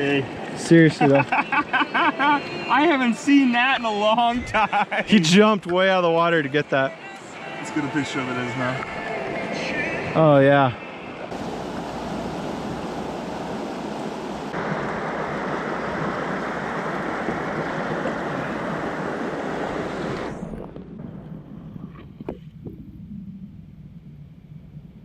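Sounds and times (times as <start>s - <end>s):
river water rushing: 0.0s - 4.2s, 5.2s - 20.5s.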